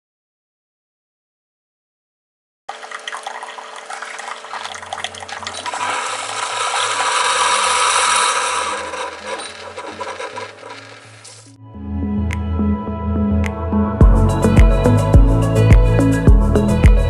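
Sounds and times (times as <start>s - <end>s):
soft background music: 11.5s - 17.0s.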